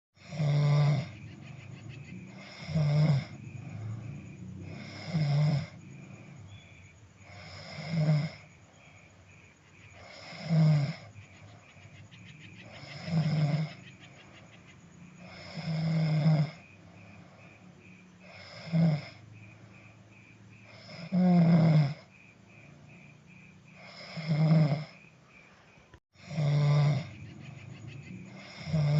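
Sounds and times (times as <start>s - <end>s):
person snoring heavily: 0.2s - 9.1s, 9.9s - 11.2s, 12.6s - 13.8s, 15.1s - 19.2s, 20.6s - 22.1s, 23.7s - 25.1s, 26.2s - 27.2s, 28.2s - 28.9s
quiet breathing: 0.2s - 21.2s, 21.9s - 28.9s.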